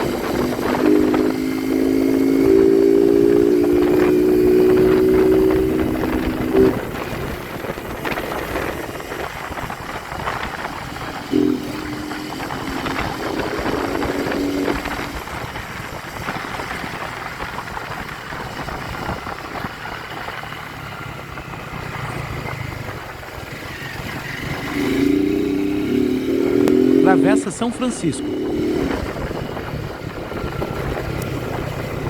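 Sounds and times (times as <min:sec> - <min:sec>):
motorcycle running: 0:00.0 - 0:32.0
road and wind noise: 0:00.0 - 0:32.0
steady droning tone: 0:11.2 - 0:15.3.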